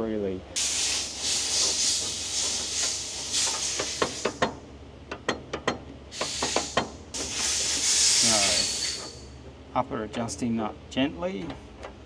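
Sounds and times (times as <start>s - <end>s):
steady hiss: 0.6s - 4.4s, 6.1s - 9.2s.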